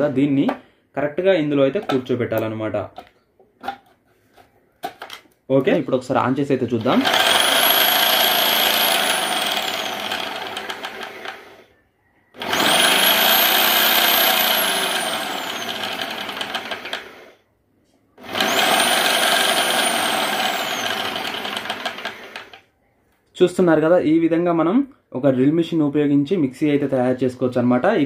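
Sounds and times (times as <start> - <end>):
electric drill motor whine: 6.9 - 11.7, 12.3 - 17.4, 18.2 - 22.6.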